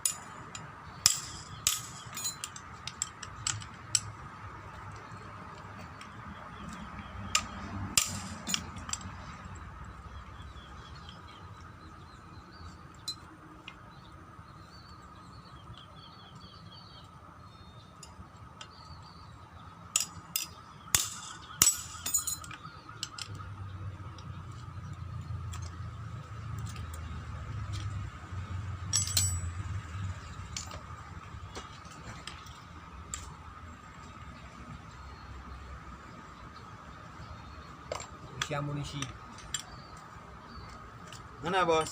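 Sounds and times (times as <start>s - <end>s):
metal tools clinking: 0.0s - 4.2s, 7.3s - 9.6s, 12.9s - 13.3s, 19.9s - 23.4s, 28.6s - 33.4s, 37.9s - 40.0s
birds chirping: 0.0s - 41.9s.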